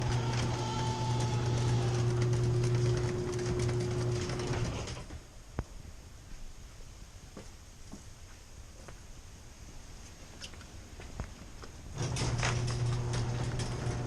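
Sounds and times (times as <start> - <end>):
garage door opener motor humming: 0.0 - 5.1, 12.0 - 14.0.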